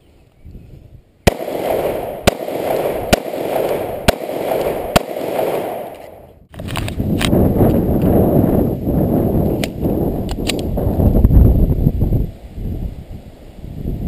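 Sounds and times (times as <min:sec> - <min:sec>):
gunshots: 0:01.3 - 0:06.3.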